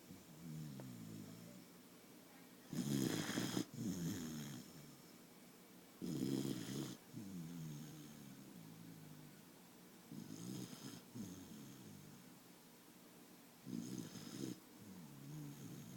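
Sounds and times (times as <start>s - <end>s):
dog snoring: 0.0s - 1.6s, 2.7s - 5.0s, 6.0s - 9.3s, 10.1s - 12.2s, 13.6s - 15.9s.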